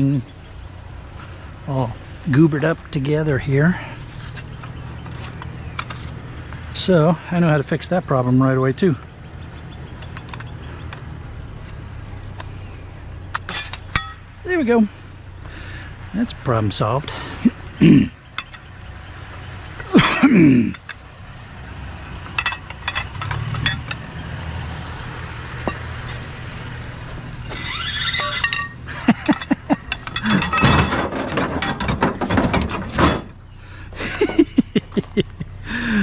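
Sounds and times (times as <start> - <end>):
clicks and clinks of parts: 4.2 - 6.2, 10.0 - 11.0, 18.4 - 18.7, 22.2 - 24.1, 25.6 - 33.4.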